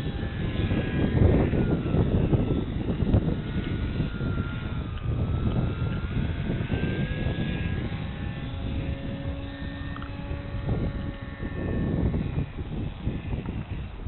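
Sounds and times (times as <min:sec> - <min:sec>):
model airplane motor whining: 0:00.0 - 0:14.0
wind rush on microphone: 0:00.0 - 0:14.0.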